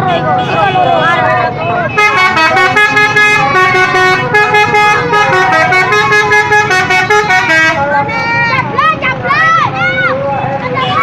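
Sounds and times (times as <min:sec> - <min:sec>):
musical bus horn melody: 0:00.0 - 0:08.3.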